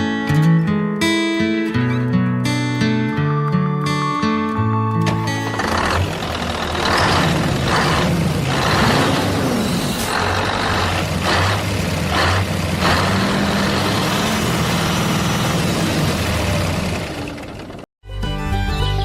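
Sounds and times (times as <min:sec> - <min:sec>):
truck engine running: 0:05.4 - 0:17.9.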